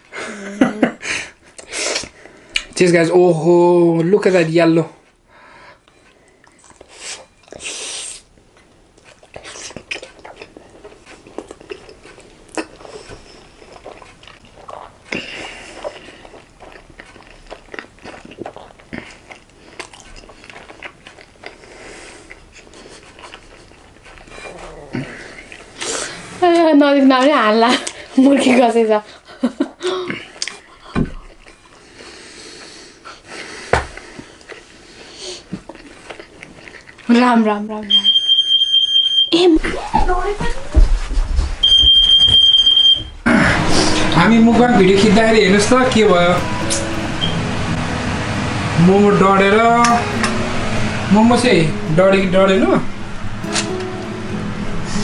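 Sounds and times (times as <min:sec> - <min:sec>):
chewing mouth sounds: 0:06.4 - 0:07.8, 0:08.6 - 0:26.0.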